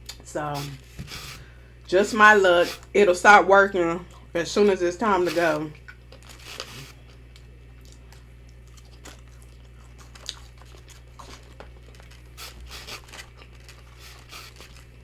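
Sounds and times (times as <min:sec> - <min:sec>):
person chewing fried food: 0:05.8 - 0:15.0.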